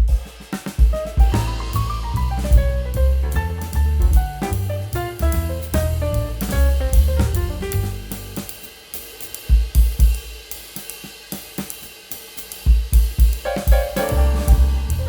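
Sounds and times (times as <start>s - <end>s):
heavy bass-drum hits: 0.0s - 8.6s, 13.6s - 15.0s
drum-kit break: 0.0s - 15.0s.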